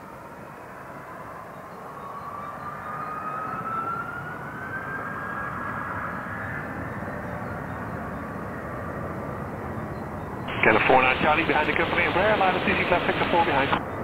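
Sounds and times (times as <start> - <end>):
jet engine whine rising in pitch: 0.5 - 14.0
jet engine rumble: 5.6 - 14.0.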